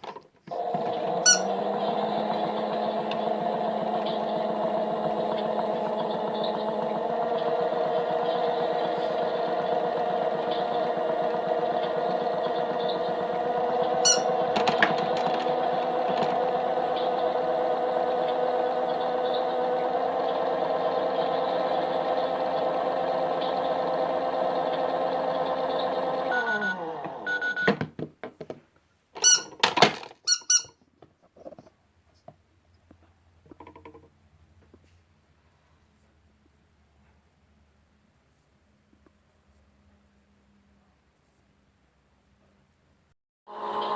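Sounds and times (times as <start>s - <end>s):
small electric motor whining: 0.5s - 27.6s.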